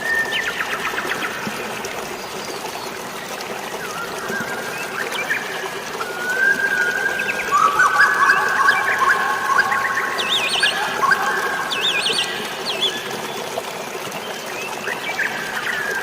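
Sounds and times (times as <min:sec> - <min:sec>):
flowing water: 0:00.0 - 0:16.0
birds chirping: 0:06.6 - 0:13.5.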